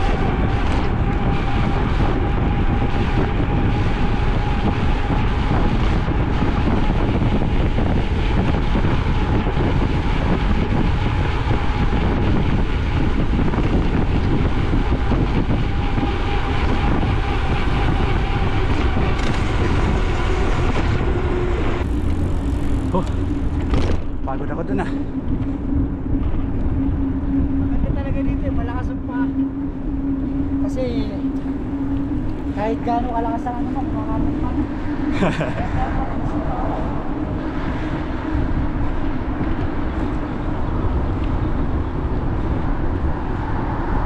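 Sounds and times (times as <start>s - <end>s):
wind rumble on microphone: 0.0s - 44.0s.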